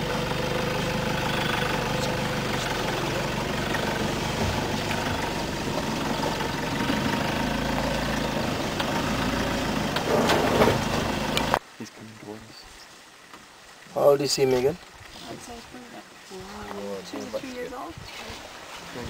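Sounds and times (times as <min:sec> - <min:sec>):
vehicle engine idling: 0:00.0 - 0:11.6.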